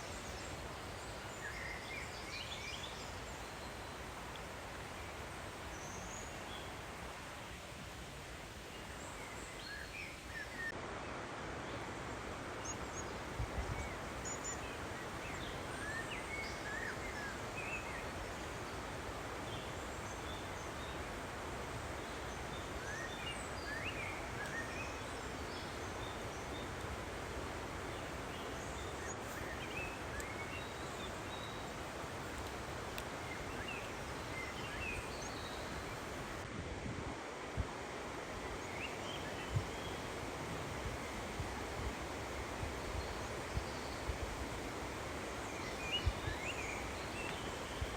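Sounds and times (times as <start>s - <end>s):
outdoor background hiss: 0.0s - 47.9s
small birds chirping: 21.9s - 36.4s.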